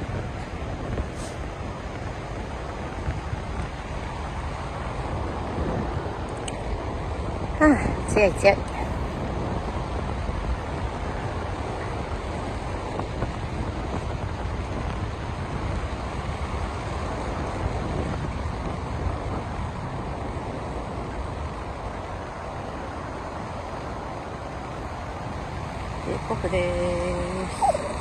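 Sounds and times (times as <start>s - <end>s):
wind buffeting microphone: 0.0s - 28.0s.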